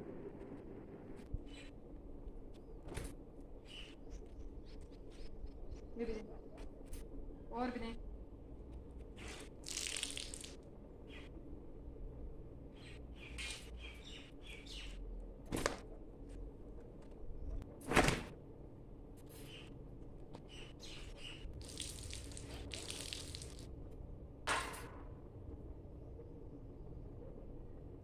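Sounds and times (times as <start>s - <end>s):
small birds chirping: 3.6s - 6.4s, 11.0s - 11.4s, 12.7s - 15.0s, 19.3s - 19.8s, 20.4s - 23.6s.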